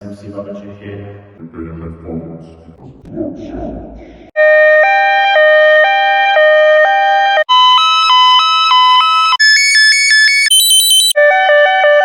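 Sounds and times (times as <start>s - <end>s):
two-tone ambulance siren: 4.4s - 12.0s.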